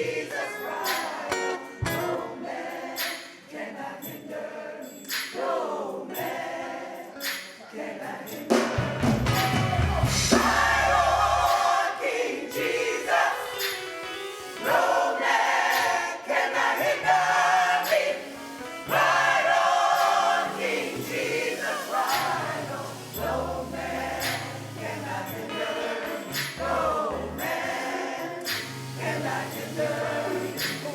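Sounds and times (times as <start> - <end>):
gospel choir singing: 0.0 - 30.9
instrumental accompaniment with bass: 0.7 - 2.5, 8.8 - 11.6.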